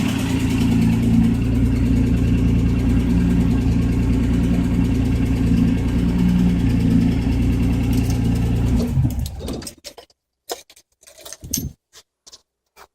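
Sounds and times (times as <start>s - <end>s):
car engine running down: 0.0s - 9.7s.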